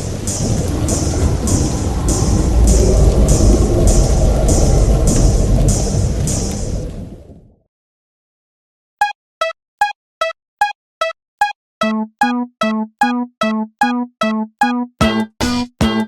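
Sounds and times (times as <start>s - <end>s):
lower tone: 0.0s - 7.0s.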